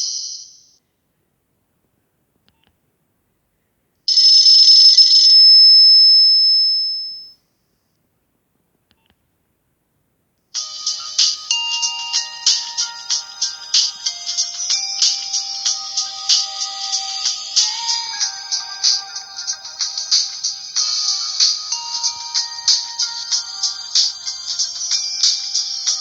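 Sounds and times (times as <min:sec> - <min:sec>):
ringtone melody: 0:10.6 - 0:26.0.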